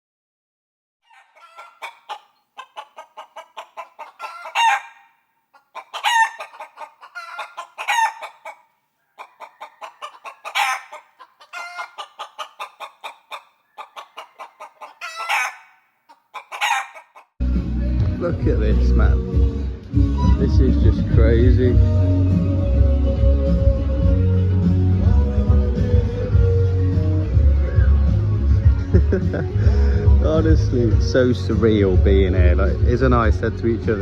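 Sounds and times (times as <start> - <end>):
chickens clucking: 1.0 - 17.4, 20.0 - 21.1.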